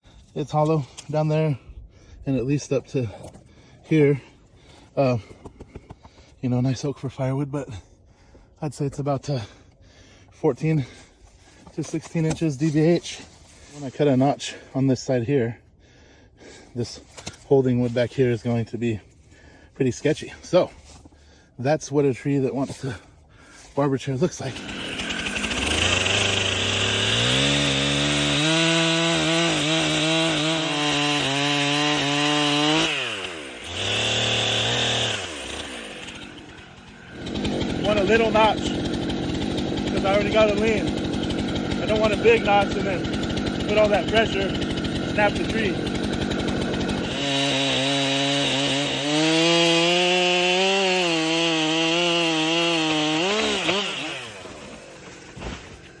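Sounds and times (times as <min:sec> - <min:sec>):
chainsaw cutting into wood: 0:22.6 - 0:56.0.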